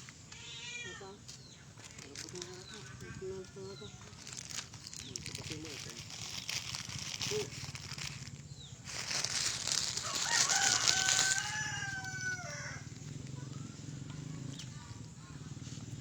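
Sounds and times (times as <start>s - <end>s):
rooster crowing: 9.8s - 13.0s.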